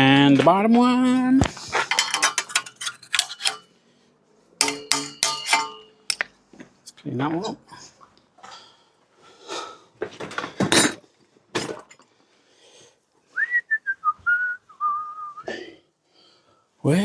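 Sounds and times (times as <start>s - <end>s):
clattering rustling handling noise: 1.4s - 3.7s, 4.6s - 6.8s
man whistling a tune: 13.3s - 15.5s.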